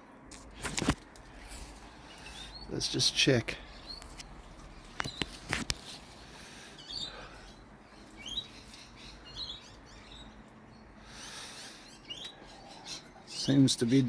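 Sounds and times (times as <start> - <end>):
small birds chirping: 0.3 - 14.0
sharp clicks: 3.9 - 6.0.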